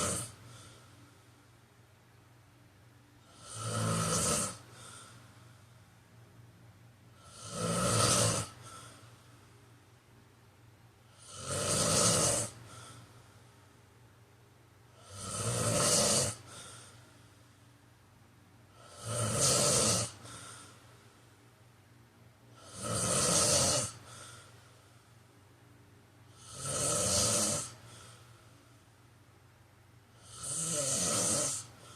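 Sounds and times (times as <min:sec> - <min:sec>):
man snoring loudly: 0:00.0 - 0:00.8, 0:03.2 - 0:05.0, 0:07.2 - 0:08.9, 0:11.1 - 0:13.0, 0:15.0 - 0:16.8, 0:18.8 - 0:20.6, 0:22.5 - 0:24.3, 0:26.3 - 0:28.0, 0:30.2 - 0:31.9.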